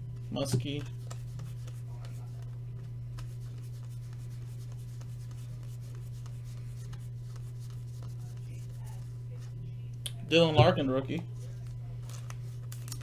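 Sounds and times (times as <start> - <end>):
steady low hum: 0.0 - 13.0
cards rubbing together: 0.7 - 9.5.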